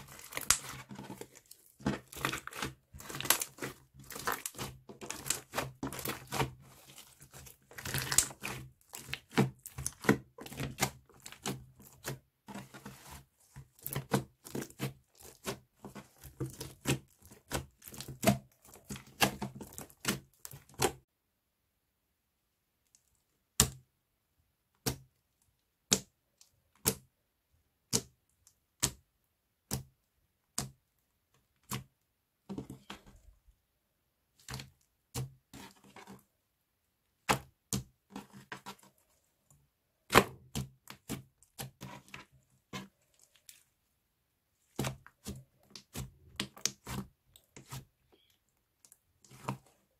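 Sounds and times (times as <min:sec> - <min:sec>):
slime squishing and clicking: 0:00.1 - 0:12.1.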